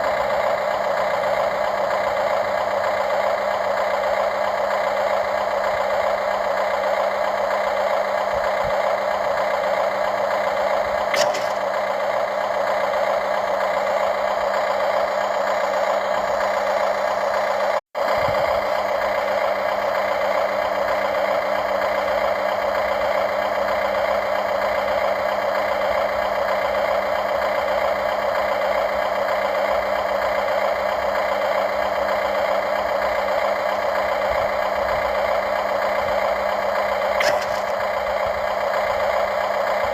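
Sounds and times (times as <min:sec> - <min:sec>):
whirring motor noise: 0:00.0 - 0:31.0, 0:31.7 - 0:39.9
short click: 0:11.2 - 0:11.6, 0:37.2 - 0:37.8.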